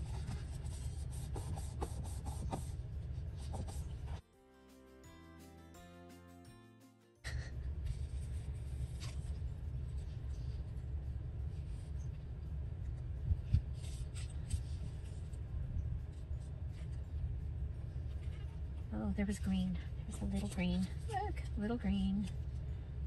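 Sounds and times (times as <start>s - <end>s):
paper rustling and rubbing: 0.0s - 4.2s, 13.6s - 15.3s
steady low hum: 0.0s - 4.2s, 7.2s - 23.0s.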